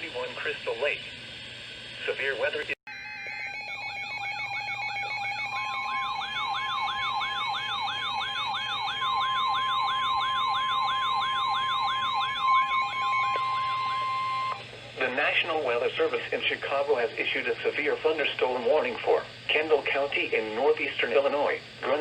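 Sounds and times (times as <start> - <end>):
weather radio alarm tone: 3.0 - 14.6
electronic beeps: 3.4 - 14.6
rising siren-like sweep: 3.5 - 14.6.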